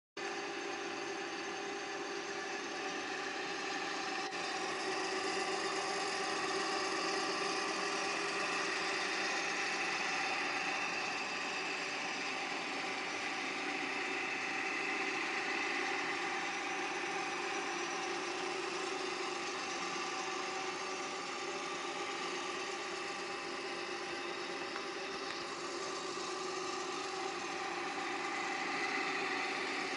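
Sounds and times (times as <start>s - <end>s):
drilling machine whirring and whining: 0.2s - 29.9s.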